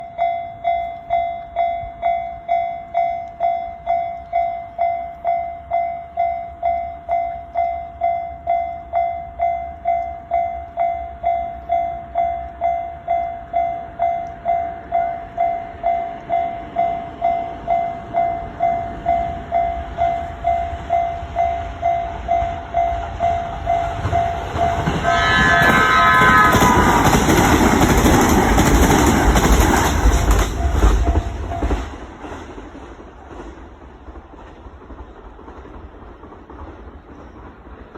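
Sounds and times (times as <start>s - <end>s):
level crossing warning bell: 0.0s - 26.8s
train passing: 0.0s - 37.9s.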